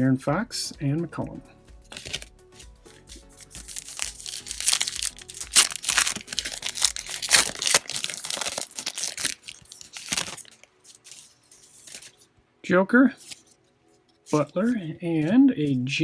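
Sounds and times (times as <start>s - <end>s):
wrapper crinkling and tearing: 1.8s - 2.3s, 2.9s - 12.3s
cards rustling: 1.8s - 12.3s, 13.2s - 13.6s, 14.2s - 16.0s.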